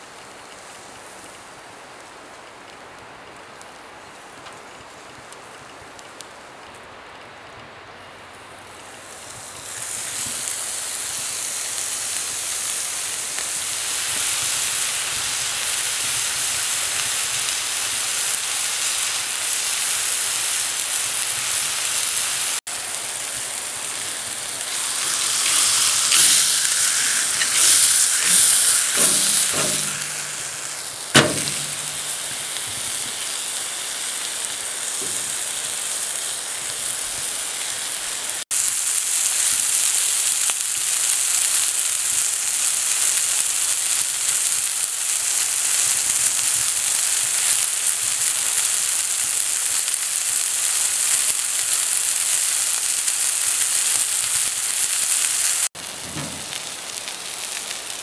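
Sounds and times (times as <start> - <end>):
crackling: 8.0 - 58.0
food sizzling in a pan: 8.4 - 58.0
sharp knock: 24.7 - 32.6.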